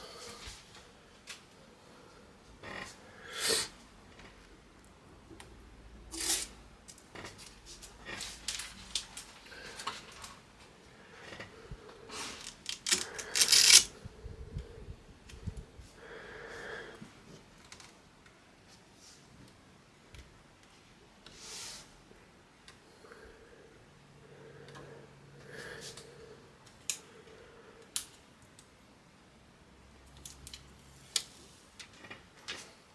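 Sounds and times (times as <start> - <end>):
plastic and cardboard rustling: 12.1 - 13.9
small clicks: 12.4 - 13.9.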